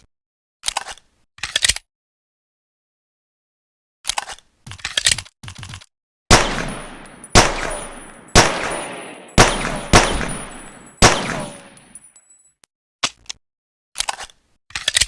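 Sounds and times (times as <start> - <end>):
pistol shots echoing: 6.3 - 12.0.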